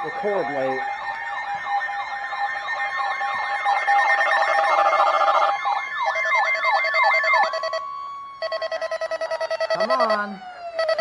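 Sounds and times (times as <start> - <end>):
siren-like sweeping alarm tone: 0.0 - 11.0
steady high alarm tone: 0.0 - 11.0
pulsed electronic beeping: 8.4 - 11.0.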